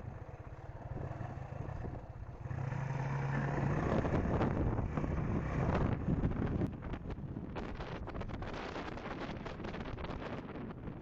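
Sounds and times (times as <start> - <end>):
motorcycle engine revving: 0.0 - 6.2.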